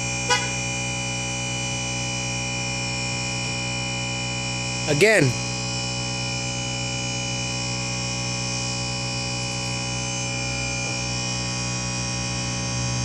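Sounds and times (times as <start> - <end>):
air compressor humming: 0.1 - 0.7.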